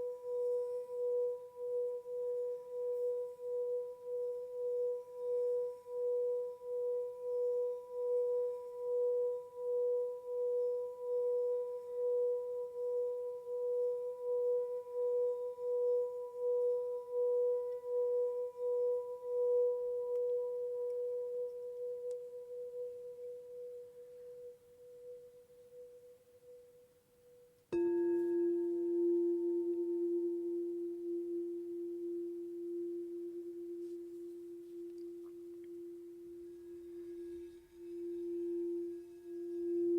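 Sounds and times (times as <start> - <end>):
singing bowl pulsing tone: 0.0 - 26.9, 27.7 - 39.9
lower singing bowl struck ringing: 27.7 - 39.9.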